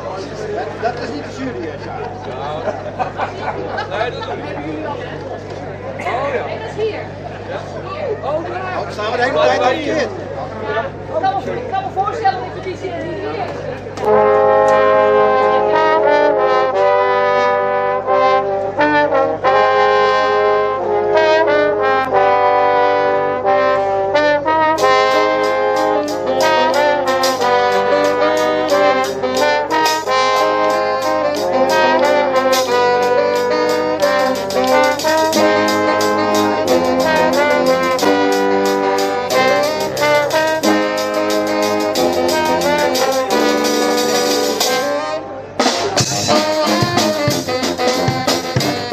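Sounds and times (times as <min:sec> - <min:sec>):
brass band playing: 0:00.0 - 0:01.5, 0:09.0 - 0:10.1, 0:13.9 - 0:48.9
percussion beat: 0:24.8 - 0:45.0, 0:45.6 - 0:48.9.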